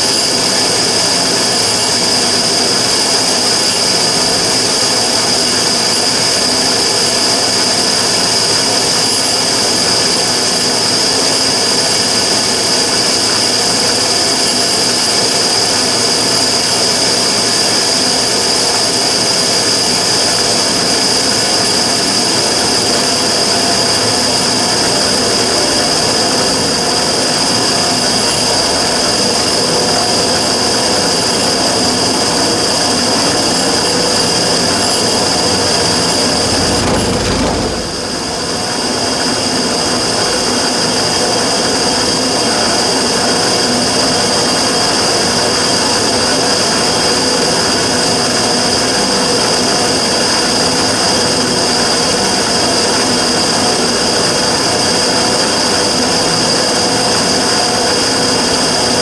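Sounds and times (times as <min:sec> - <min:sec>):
burner firing with whistle: 0:34.2 - 0:38.6.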